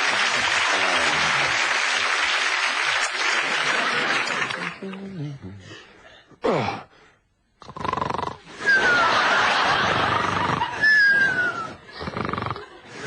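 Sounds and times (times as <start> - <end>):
short falling whistles: 10.8 - 11.8.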